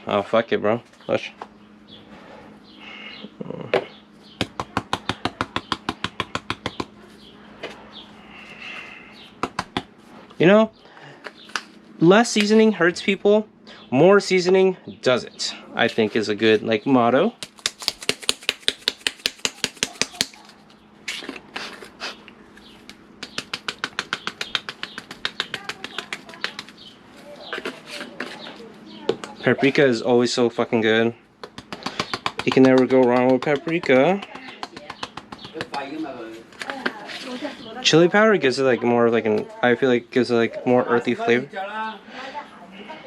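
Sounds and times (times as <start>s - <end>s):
spice shaker clicking: 17.4s - 20.4s, 23.2s - 26.8s
spice container rattling: 17.4s - 20.5s.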